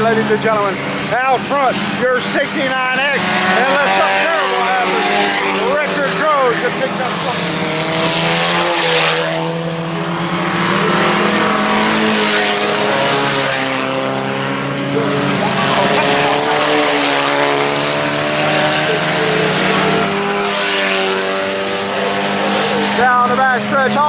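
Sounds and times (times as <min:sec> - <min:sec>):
race car engines at speed: 0:00.0 - 0:24.0.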